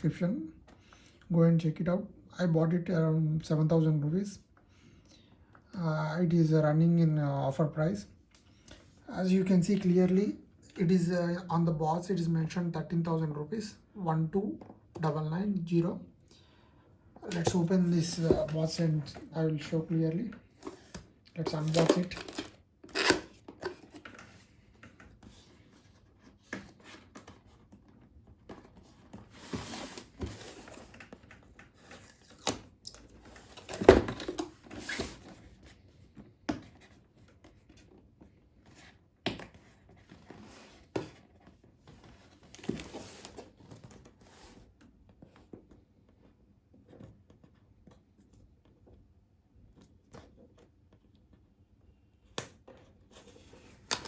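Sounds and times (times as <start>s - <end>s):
packaging rustling and scraping: 17.2s - 24.6s, 25.3s - 35.8s, 39.7s - 44.7s
cardboard tearing: 21.6s - 23.8s.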